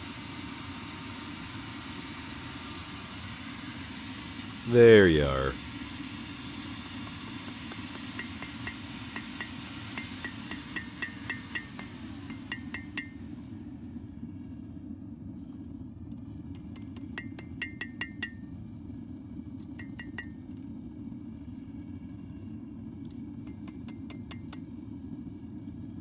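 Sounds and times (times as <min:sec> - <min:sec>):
forge burner roaring: 0:00.0 - 0:26.0
hammer striking steel on anvil: 0:07.1 - 0:13.3, 0:16.6 - 0:18.5, 0:19.8 - 0:20.3.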